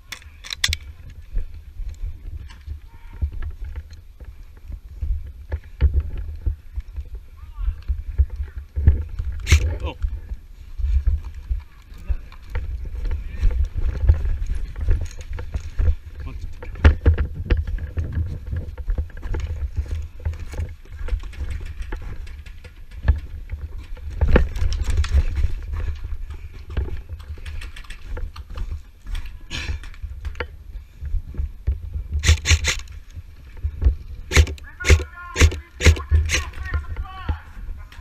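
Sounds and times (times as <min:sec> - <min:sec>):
camera handling rumble: 0:00.0 - 0:01.2, 0:07.8 - 0:10.4, 0:11.1 - 0:30.6, 0:31.7 - 0:37.0
sharp clicks: 0:09.4 - 0:10.1, 0:32.2 - 0:33.1, 0:34.3 - 0:36.8.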